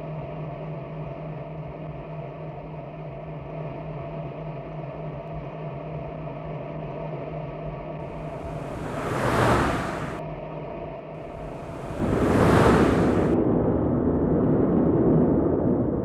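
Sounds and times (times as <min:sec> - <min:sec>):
faint hiss: 0:08.1 - 0:10.2, 0:11.3 - 0:13.4
mechanical engine hum: 0:08.1 - 0:10.2, 0:11.3 - 0:13.4.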